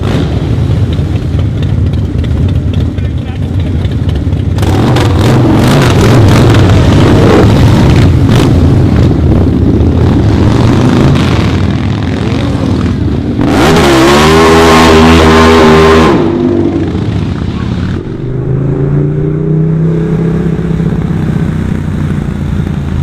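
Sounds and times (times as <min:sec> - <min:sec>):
engine pops: 0:00.0 - 0:05.6
motorcycle engine running rough: 0:00.0 - 0:23.0.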